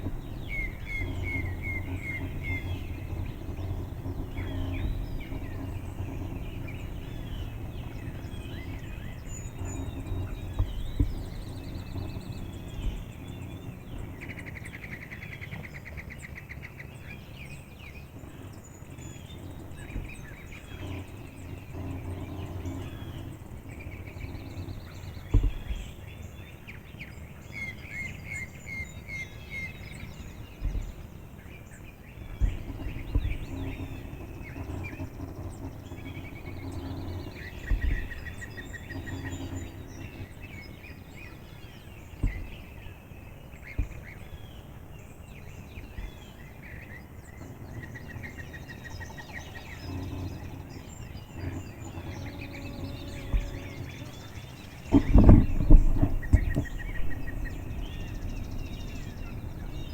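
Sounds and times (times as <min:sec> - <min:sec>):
steady low rumble: 0:00.0 - 0:16.0, 0:17.0 - 0:59.9
rapid trilled birdsong: 0:00.0 - 0:59.9
songbirds chirping: 0:00.0 - 0:59.9.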